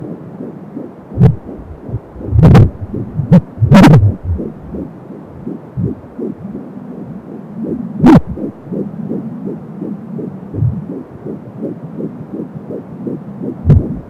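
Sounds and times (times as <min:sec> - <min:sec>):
speaker hiss: 0:00.0 - 0:08.9
fetal heartbeat whooshing pulse: 0:00.4 - 0:14.0.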